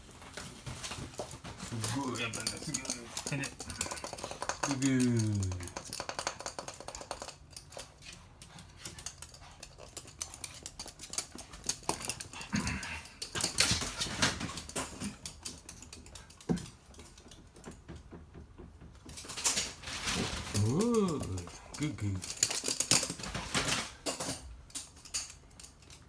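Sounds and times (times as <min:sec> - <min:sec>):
dog claws scrabbling on hard surface: 0:00.2 - 0:26.0.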